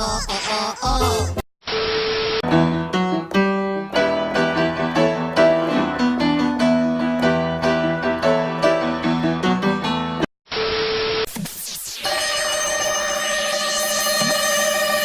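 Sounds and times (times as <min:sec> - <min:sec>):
piano music: 0:02.4 - 0:10.3.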